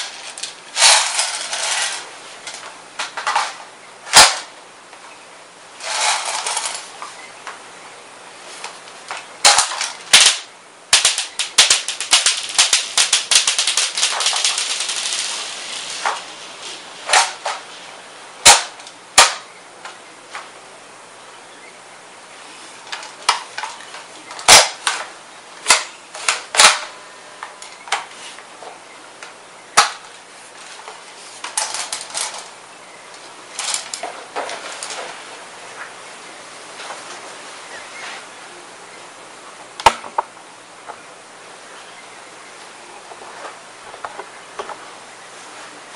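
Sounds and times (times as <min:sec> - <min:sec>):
airsoft gun firing: 0:09.5 - 0:15.3, 0:18.4 - 0:19.5.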